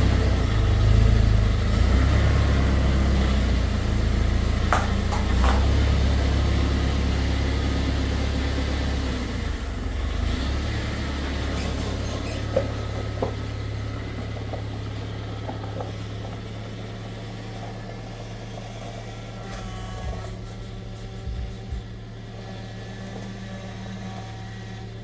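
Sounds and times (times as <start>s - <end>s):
engine idling: 0.0s - 25.0s
light knocks: 4.7s - 5.8s.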